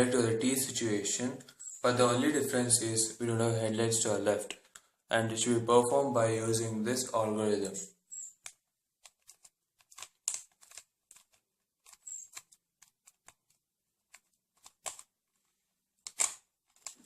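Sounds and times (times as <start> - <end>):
puzzle cube clicking as turned: 8.1 - 15.1, 16.0 - 17.0.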